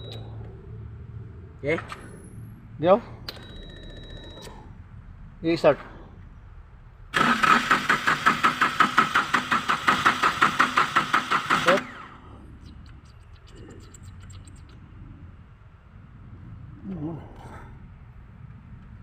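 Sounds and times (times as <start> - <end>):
diesel engine cranking: 7.0 - 14.9.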